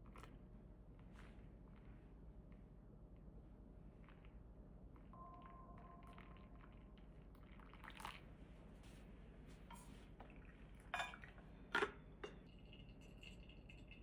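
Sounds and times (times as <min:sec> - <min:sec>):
coffee drops plinking: 0:10.2 - 0:14.0.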